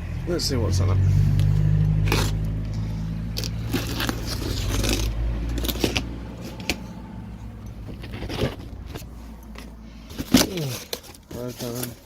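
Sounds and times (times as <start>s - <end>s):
packing tape tearing: 2.0s - 2.6s, 3.3s - 6.8s, 10.1s - 12.0s
cardboard scraping and crinkling: 3.4s - 7.0s, 7.7s - 12.0s.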